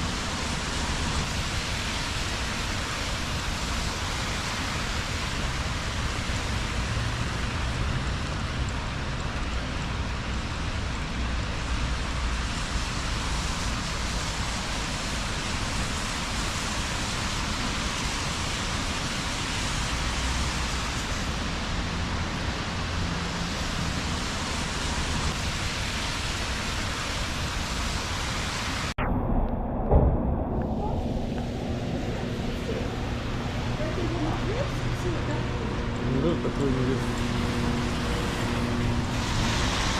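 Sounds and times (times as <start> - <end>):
rain hissing: 0.0 - 39.9
passing traffic rumble: 29.5 - 39.9.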